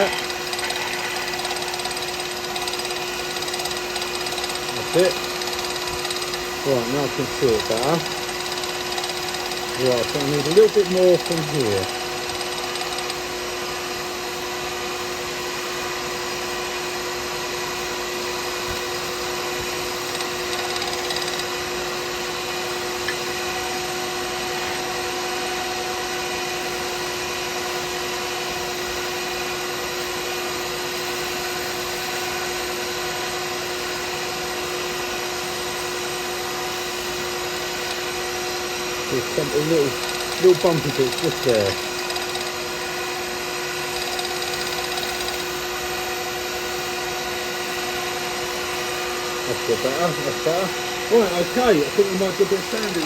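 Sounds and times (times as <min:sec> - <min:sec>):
turning tool cutting: 0:00.0 - 0:13.4, 0:19.7 - 0:22.2, 0:36.8 - 0:38.2, 0:38.9 - 0:45.7, 0:49.6 - 0:53.0
wood lathe motor hum: 0:00.0 - 0:13.4, 0:18.7 - 0:26.0, 0:35.2 - 0:45.7, 0:47.8 - 0:53.0.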